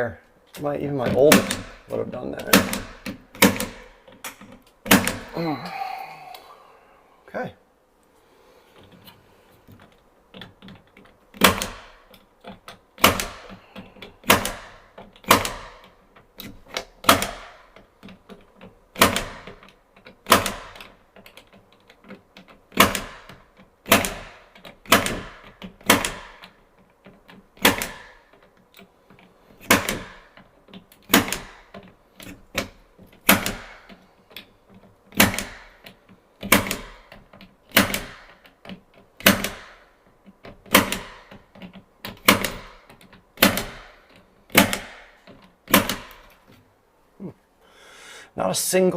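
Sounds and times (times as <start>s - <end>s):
punch-down tool snapping: 31.0s - 34.0s, 42.1s - 46.4s.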